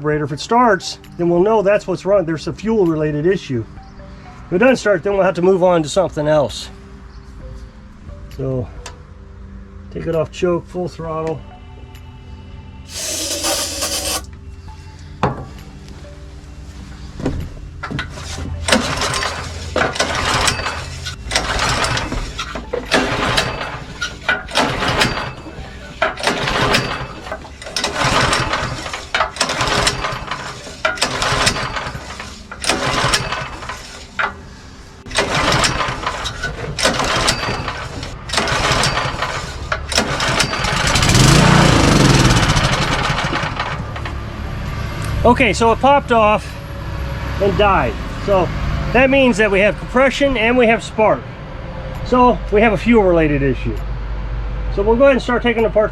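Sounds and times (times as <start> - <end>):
recoil starter pulls: 12.9 - 14.3, 17.9 - 34.4, 35.1 - 44.2
small engine firing: 12.9 - 14.3, 26.1 - 33.8, 35.1 - 44.0.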